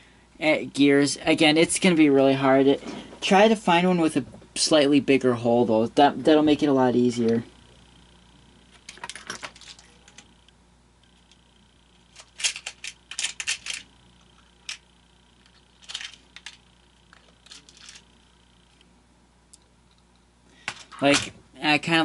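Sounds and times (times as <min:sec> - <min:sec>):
plastic gears clicking and rattling: 0:12.1 - 0:13.8, 0:15.8 - 0:16.6.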